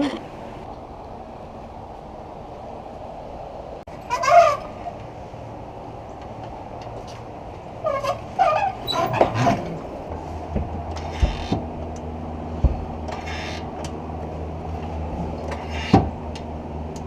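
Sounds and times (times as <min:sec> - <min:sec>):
short squeaks: 0:07.8 - 0:09.7
steady low hum: 0:08.9 - 0:17.0.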